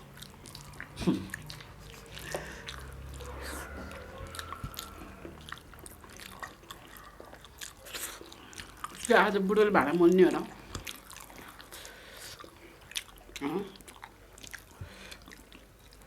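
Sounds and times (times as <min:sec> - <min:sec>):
mouth clicks and smacks: 0:00.0 - 0:09.1
person chewing food: 0:00.0 - 0:16.0.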